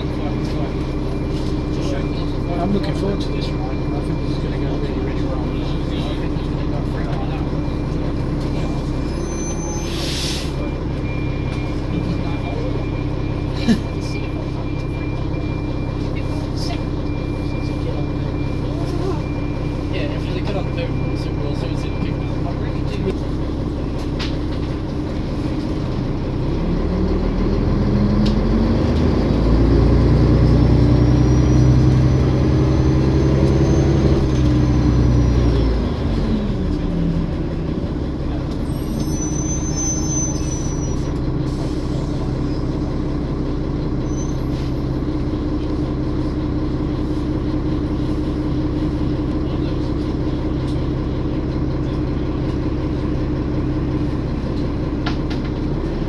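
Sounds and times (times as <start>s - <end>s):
bus engine accelerating: 0.0s - 56.0s
brief high squeal: 9.1s - 10.6s, 38.7s - 41.1s, 44.0s - 44.7s.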